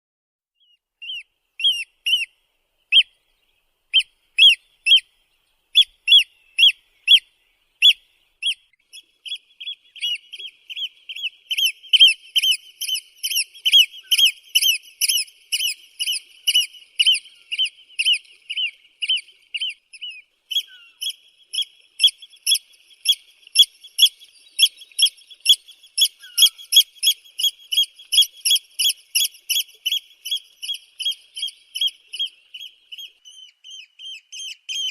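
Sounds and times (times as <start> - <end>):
bird piping calls: 0.6 - 3.3, 3.9 - 34.9.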